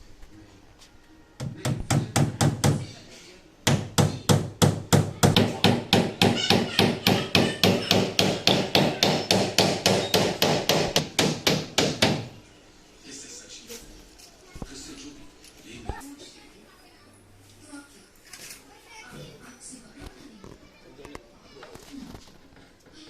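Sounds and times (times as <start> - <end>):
hammer striking wood: 1.4 - 2.9, 3.7 - 12.4.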